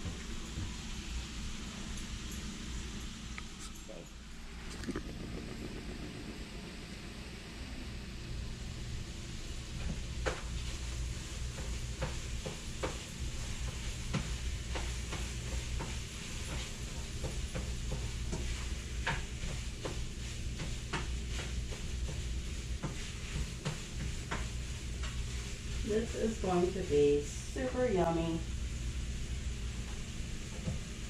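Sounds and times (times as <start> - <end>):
steady low hum: 0.0 - 31.0
sausage sizzling in a frying pan: 8.0 - 31.0.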